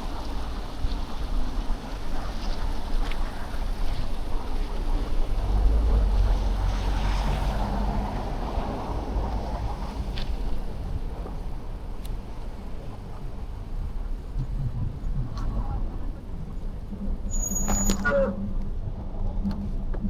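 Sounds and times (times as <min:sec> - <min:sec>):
low rumble of traffic: 0:00.0 - 0:20.0
wind on microphone: 0:00.0 - 0:20.0
brief high squeak: 0:17.3 - 0:18.4.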